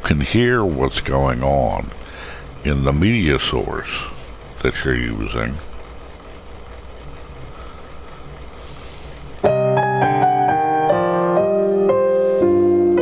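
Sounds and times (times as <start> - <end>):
low background hiss: 0.0 - 13.0
instrumental keyboard music: 9.4 - 13.0.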